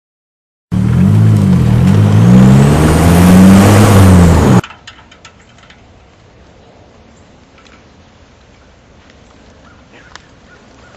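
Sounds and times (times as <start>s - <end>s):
car engine revving: 0.7s - 4.6s.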